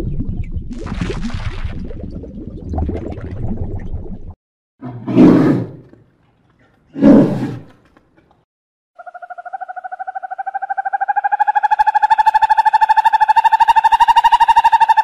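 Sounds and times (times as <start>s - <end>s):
animal roar: 4.8s - 5.9s, 6.9s - 7.7s
animal trilling rapid pulses: 9.0s - 15.0s.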